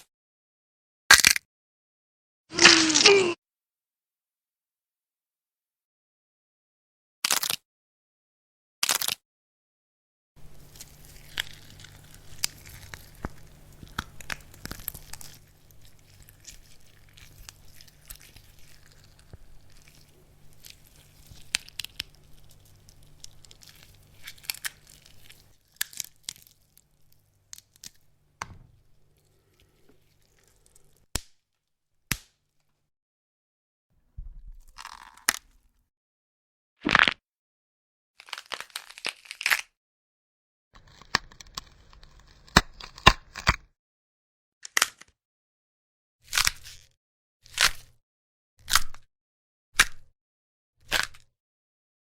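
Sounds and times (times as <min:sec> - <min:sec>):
bones cracking: 0:10.4 - 0:31.3, 0:38.2 - 0:39.7, 0:40.8 - 0:43.7.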